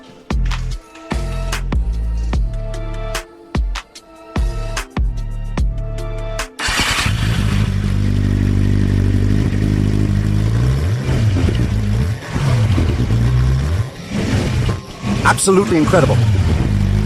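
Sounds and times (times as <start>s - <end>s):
motorcycle engine idling and revving: 6.6s - 17.0s.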